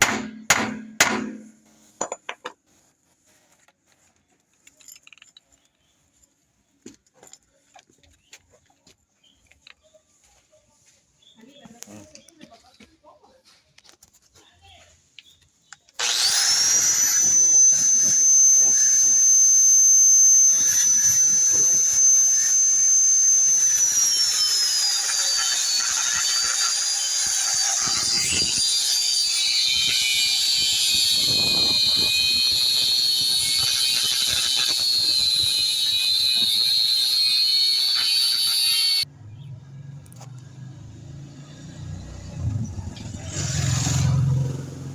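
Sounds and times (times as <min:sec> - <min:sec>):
power tool whining: 0:16.0 - 0:39.1, 0:42.5 - 0:44.9.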